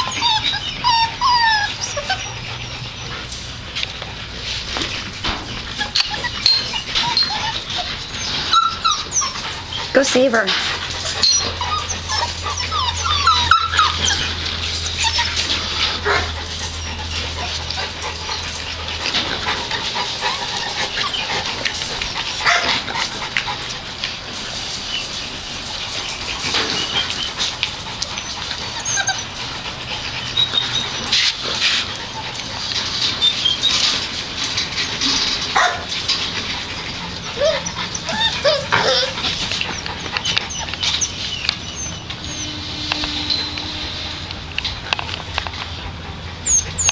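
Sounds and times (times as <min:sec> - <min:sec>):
puppies whimpering and yipping: 0:00.0 - 0:46.9
small clicks and scrapes: 0:02.8 - 0:45.9
small clicks and scuffling: 0:30.9 - 0:42.2, 0:42.8 - 0:45.8.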